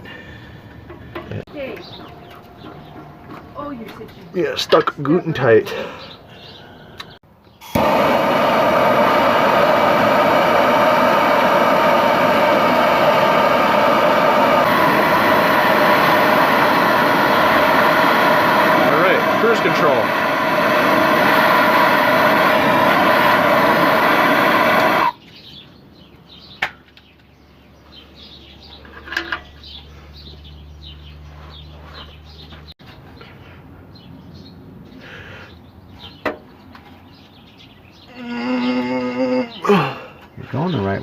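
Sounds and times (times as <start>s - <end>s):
low hum: 7.6s - 25.2s
propane torch flame rushing: 7.6s - 25.2s.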